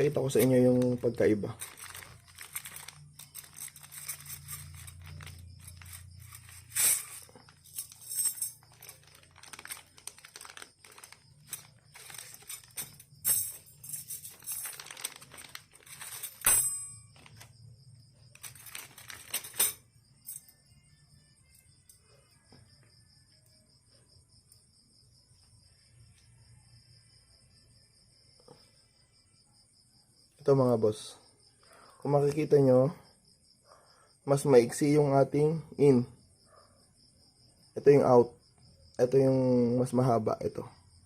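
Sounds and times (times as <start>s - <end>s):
metal spokes clinking and rustling: 0.0s - 17.5s, 18.3s - 20.5s.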